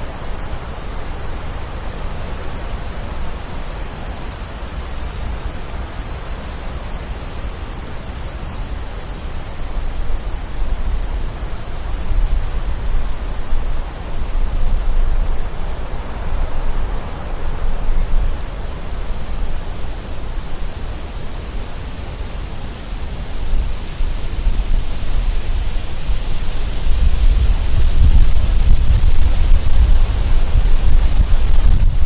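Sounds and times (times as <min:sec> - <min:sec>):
wind gusting through trees: 0:00.0 - 0:32.0
deep rumble: 0:25.7 - 0:32.0.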